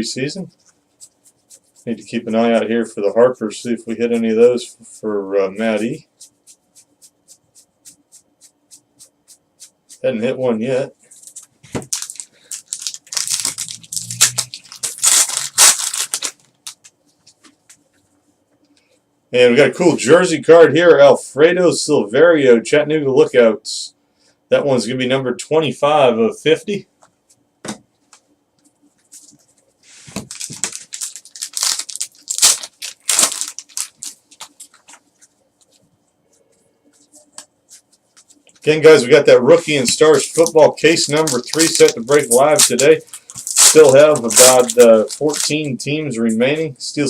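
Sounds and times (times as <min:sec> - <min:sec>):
foil wrapper tearing and crinkling: 0:11.8 - 0:16.8, 0:30.2 - 0:35.0, 0:39.7 - 0:45.6.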